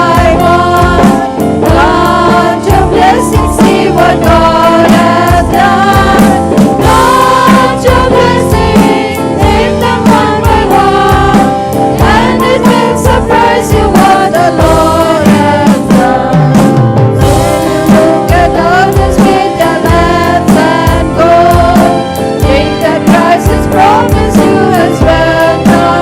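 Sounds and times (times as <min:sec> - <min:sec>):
band with steady drum beat: 0:00.0 - 0:26.0
voices singing together: 0:00.0 - 0:26.0.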